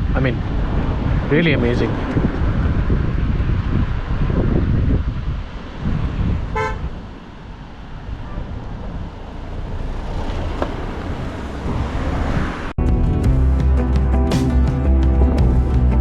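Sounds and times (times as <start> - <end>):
wind and road noise: 0.0 - 12.8
vehicle horn toot: 6.5 - 7.0.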